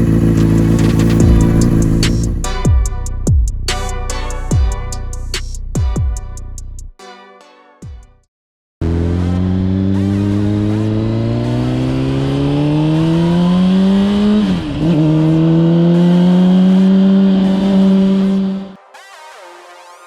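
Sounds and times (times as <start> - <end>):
motorcycle engine accelerating: 0.0 - 2.8, 8.8 - 18.8.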